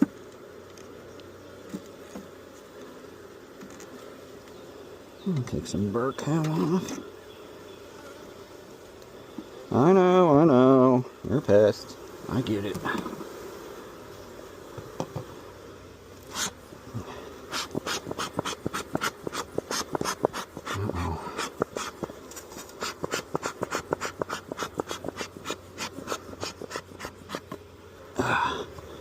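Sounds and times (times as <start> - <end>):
metal tool scraping wood: 16.2 - 16.6, 17.5 - 20.8, 21.4 - 27.6.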